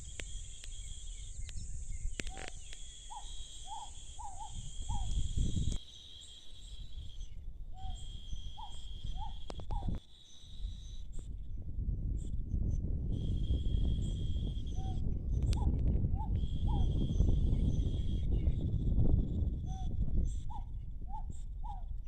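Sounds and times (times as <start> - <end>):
bird call notes: 0.0 - 11.1
insects droning: 0.0 - 22.0.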